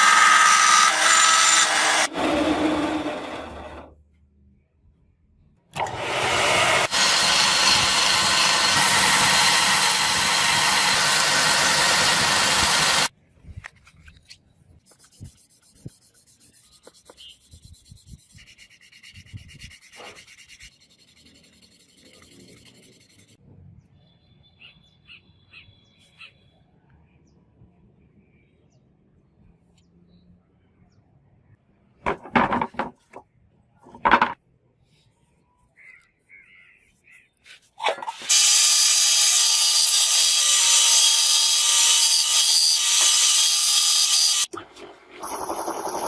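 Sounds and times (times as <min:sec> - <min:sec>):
power tool sanding steel blade: 0:00.0 - 0:03.9, 0:05.8 - 0:13.1, 0:38.3 - 0:44.5.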